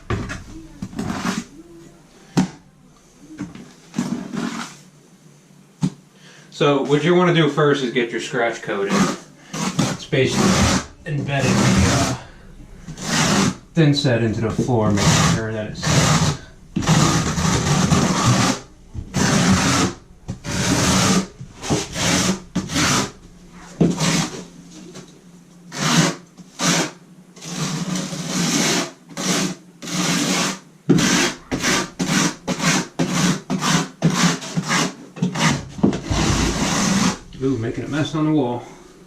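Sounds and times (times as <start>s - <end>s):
trowel scraping mortar on wood: 0.1s - 1.5s, 8.7s - 12.3s, 12.9s - 13.6s, 14.2s - 23.1s, 23.8s - 24.5s, 25.7s - 37.2s.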